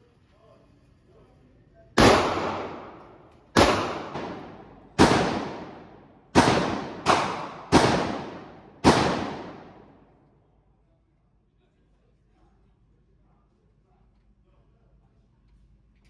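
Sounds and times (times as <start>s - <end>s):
echoing gunshots: 2.0s - 10.1s.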